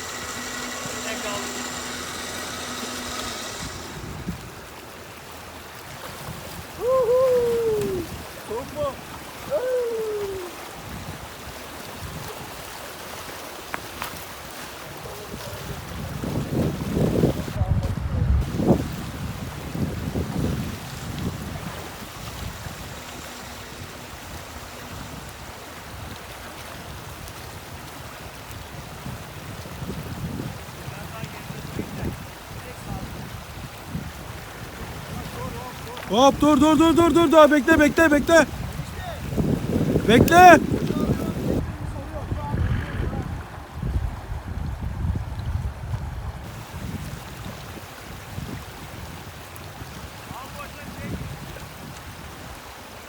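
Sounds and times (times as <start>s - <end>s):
creek water rushing: 0.0s - 17.6s, 18.4s - 44.3s, 46.4s - 53.0s
person shouting: 6.8s - 8.1s, 9.5s - 10.6s, 36.1s - 38.5s, 40.1s - 40.6s.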